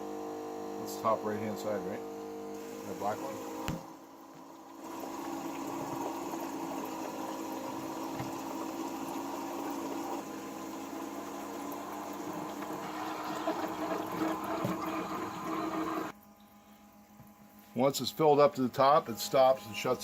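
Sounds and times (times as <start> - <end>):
small water pump humming: 0.0 - 20.0.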